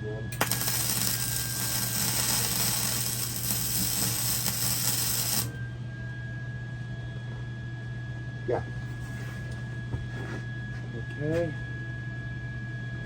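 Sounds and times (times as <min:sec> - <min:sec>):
electrical hum: 0:00.0 - 0:07.5
welding arc crackling: 0:00.4 - 0:05.6.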